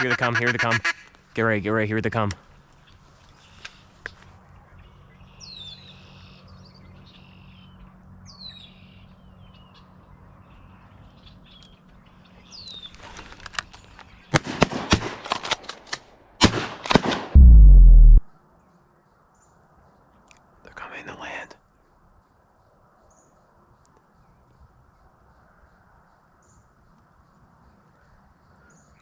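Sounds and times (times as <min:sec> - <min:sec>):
loud sharp cracks: 0:14.3 - 0:18.2
very loud low blast: 0:17.4 - 0:18.3.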